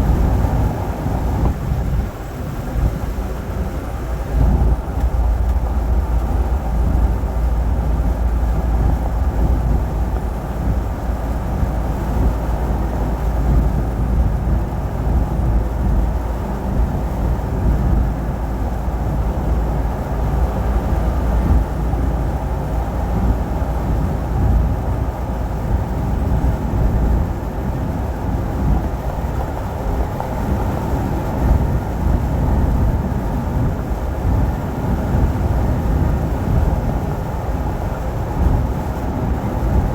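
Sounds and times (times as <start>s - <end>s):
truck engine and tyre rumble: 0.0s - 39.9s.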